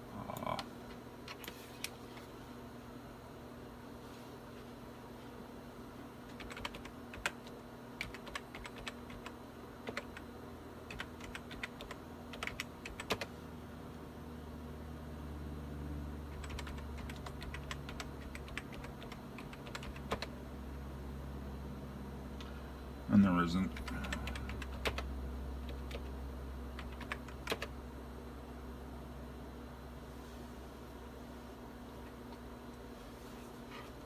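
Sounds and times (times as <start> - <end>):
steady low hum: 0.0 - 34.0
typing on computer keyboard: 6.3 - 10.3, 10.9 - 13.3, 16.3 - 20.3, 23.8 - 26.1, 26.8 - 27.7.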